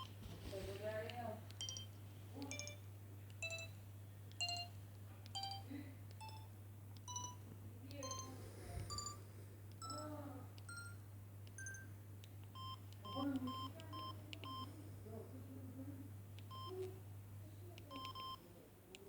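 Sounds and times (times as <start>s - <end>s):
phone ringtone beeping melody: 1.6s - 1.9s, 2.5s - 2.8s, 3.4s - 3.8s, 4.4s - 4.8s, 5.4s - 6.5s, 7.1s - 7.4s, 8.0s - 8.3s, 8.9s - 9.2s, 10.7s - 11.0s, 11.6s - 11.9s.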